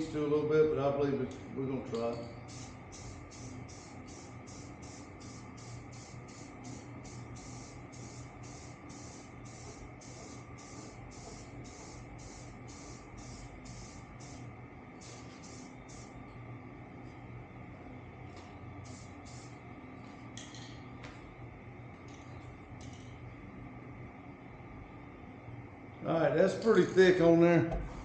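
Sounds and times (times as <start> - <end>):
spray can spraying bursts: 2.5 - 14.4, 15.0 - 16.2.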